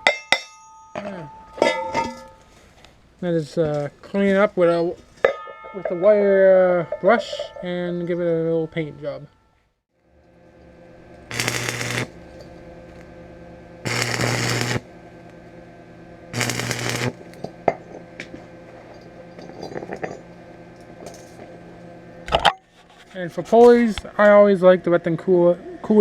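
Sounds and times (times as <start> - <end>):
steady low hum: 10.0 - 22.3.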